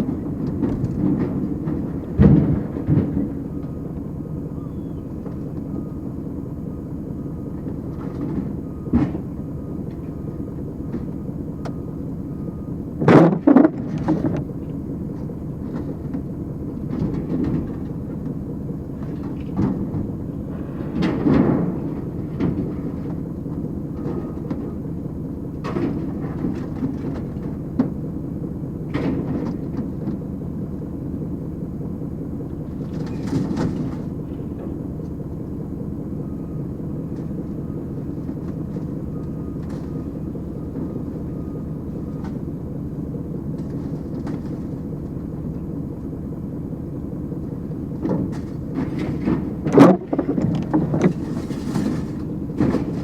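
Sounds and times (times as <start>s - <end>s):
heavy engine running: 0.0s - 53.0s.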